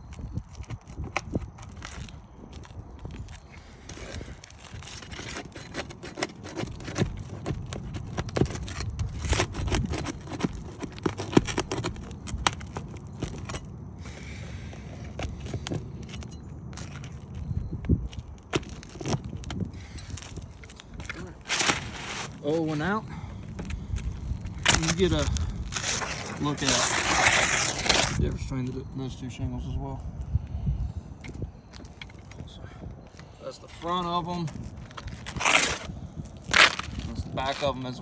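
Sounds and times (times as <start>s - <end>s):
roof shingles scraping and clicking: 0.0s - 29.3s, 33.1s - 38.0s.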